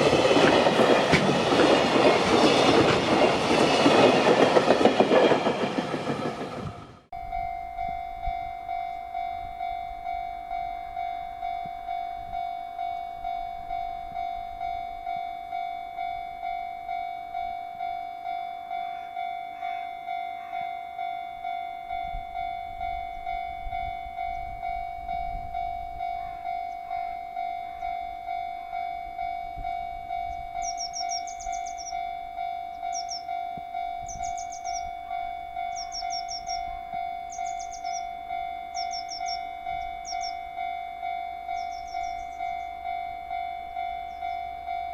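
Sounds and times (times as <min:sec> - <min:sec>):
train rushing past: 0:00.0 - 0:07.1
level crossing bell ringing: 0:07.2 - 0:44.9
birds chirping: 0:30.3 - 0:32.1, 0:32.7 - 0:33.4, 0:34.0 - 0:40.5, 0:41.5 - 0:42.9, 0:43.9 - 0:44.6.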